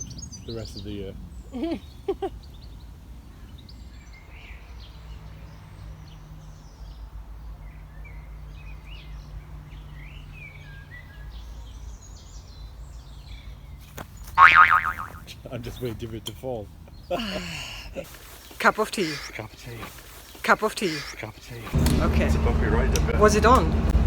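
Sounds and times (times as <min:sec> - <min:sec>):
songbirds chirping: 0:00.0 - 0:24.0
low rumble: 0:21.8 - 0:24.0.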